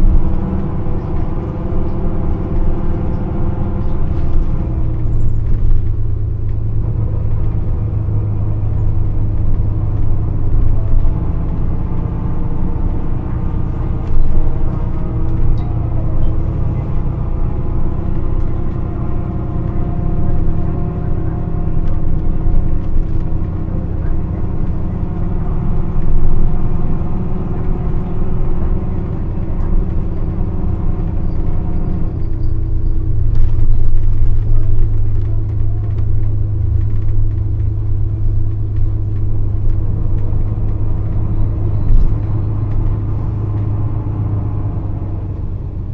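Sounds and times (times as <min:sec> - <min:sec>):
diesel bus engine running: 0:00.0 - 0:45.9.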